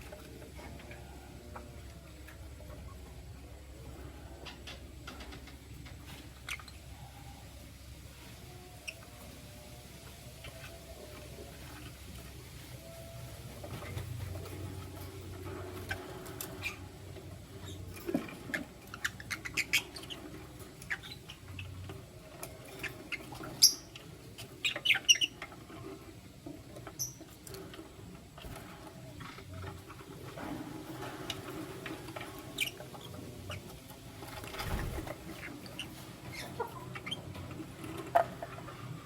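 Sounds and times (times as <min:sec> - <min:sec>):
lovebirds chirping: 0:08.6 - 0:25.7, 0:32.2 - 0:33.8, 0:34.6 - 0:37.5.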